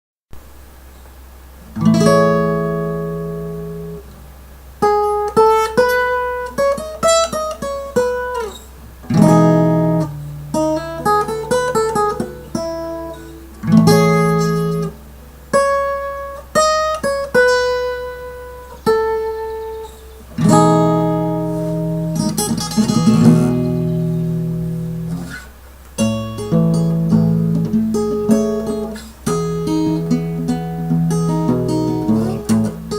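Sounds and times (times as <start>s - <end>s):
acoustic guitar playing: 0.9s - 32.9s.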